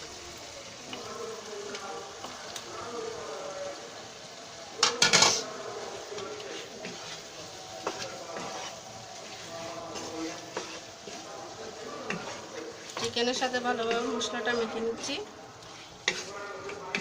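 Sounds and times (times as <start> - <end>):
food frying in a pan: 0.0 - 17.0
cookware clinking and scraping: 4.8 - 5.5, 9.9 - 11.2, 15.6 - 17.0
loud cookware clatter: 4.8 - 5.5.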